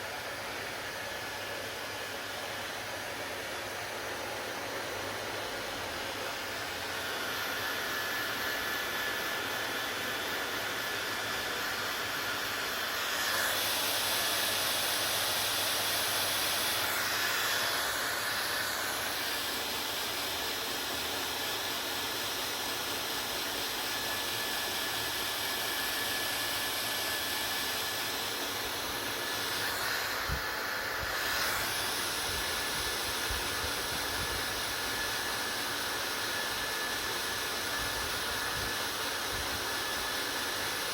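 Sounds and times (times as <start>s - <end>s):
hair dryer running: 0.0s - 40.9s.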